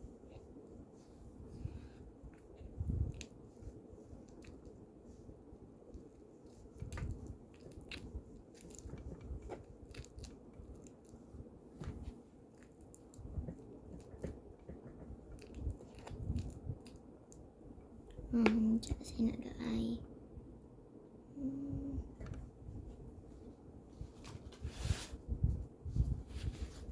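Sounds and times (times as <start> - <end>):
slime squelching: 0.3 - 17.7.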